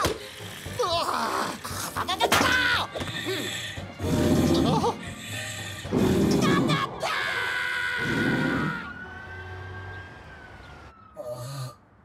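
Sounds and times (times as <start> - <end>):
cartoon snoring: 3.3 - 6.6.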